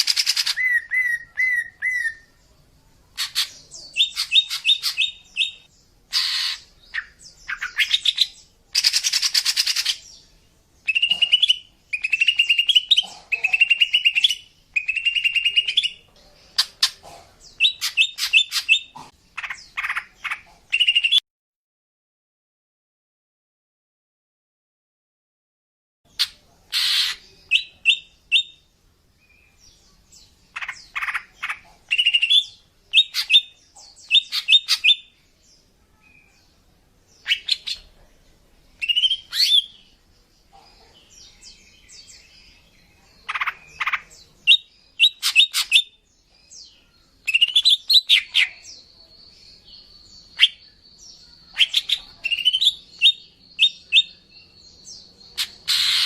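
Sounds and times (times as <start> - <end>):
bird chirping: 0.0 - 21.2, 26.1 - 56.0.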